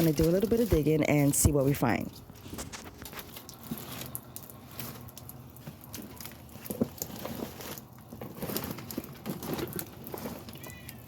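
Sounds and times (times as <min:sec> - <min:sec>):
items rustling: 0:00.0 - 0:11.0
objects knocking and clattering: 0:05.6 - 0:11.0.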